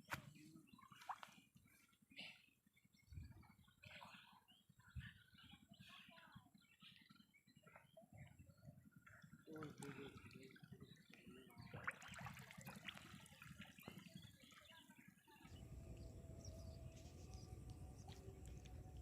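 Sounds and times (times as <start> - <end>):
water splashing and trickling: 9.4 - 14.7, 15.4 - 19.0
steady low rumble: 15.5 - 19.0.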